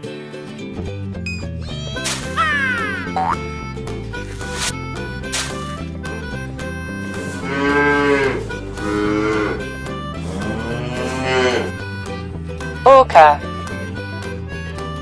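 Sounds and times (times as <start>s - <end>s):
light background music: 0.0s - 15.0s
cow mooing: 7.1s - 11.9s.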